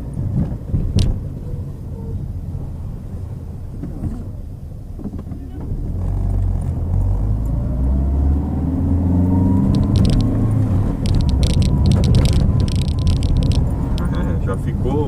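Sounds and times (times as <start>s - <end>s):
car engine pulling: 0.0s - 15.0s
road rumble: 0.0s - 15.0s
short clicks or rattles: 9.6s - 14.2s.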